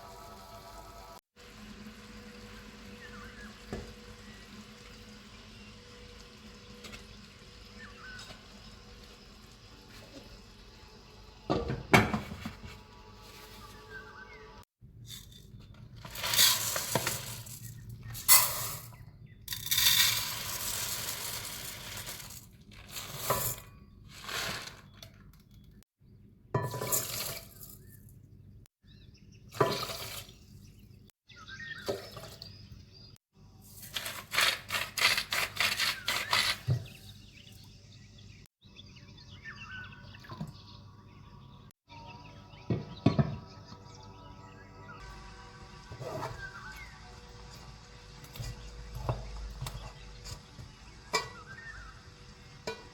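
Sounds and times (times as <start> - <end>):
kitchen utensils rattling: 26.6 - 27.9, 51.1 - 51.7.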